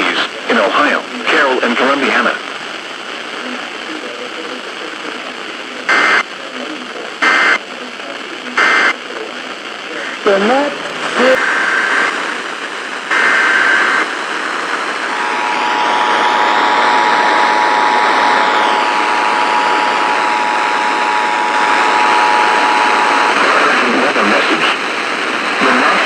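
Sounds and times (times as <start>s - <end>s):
radio hiss: 0.0s - 26.0s.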